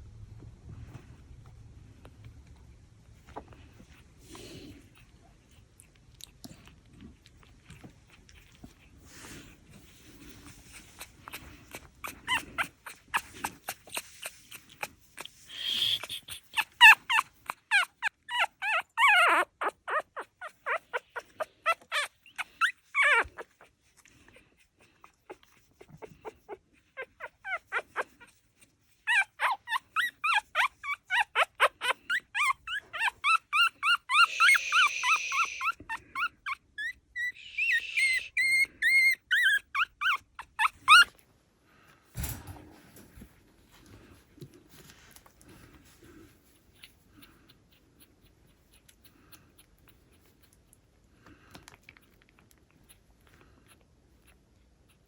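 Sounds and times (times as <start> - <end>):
puppies whimpering and squealing: 9.8 - 41.2.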